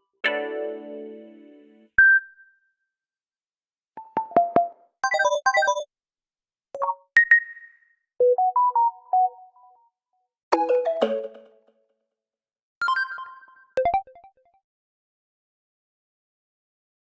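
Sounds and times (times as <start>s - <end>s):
phone ringtone and alert sounds: 5.0s - 5.9s, 6.8s - 9.9s.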